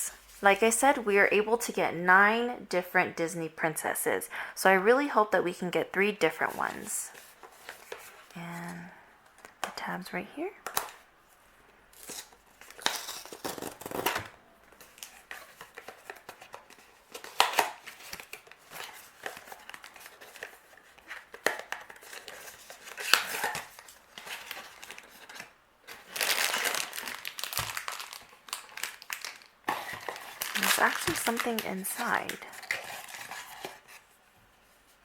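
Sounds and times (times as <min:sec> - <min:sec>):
paper and cardboard rustling: 0:06.4 - 0:08.3, 0:12.0 - 0:35.0
cardboard tearing: 0:12.0 - 0:14.3, 0:21.1 - 0:34.0.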